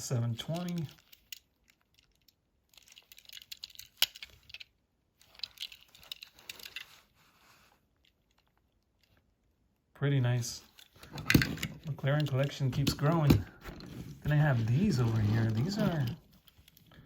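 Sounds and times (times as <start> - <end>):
toy cars clicking and rattling: 0.4 - 7.0.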